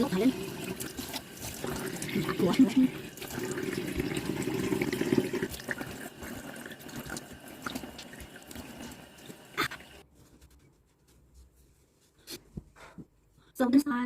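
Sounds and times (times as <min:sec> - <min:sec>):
tap water splashing into sink: 0:00.1 - 0:09.4.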